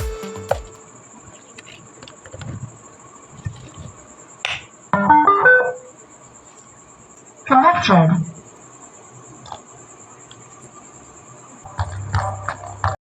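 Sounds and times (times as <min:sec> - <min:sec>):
electronic chime of stepped notes: 0:00.0 - 0:00.9.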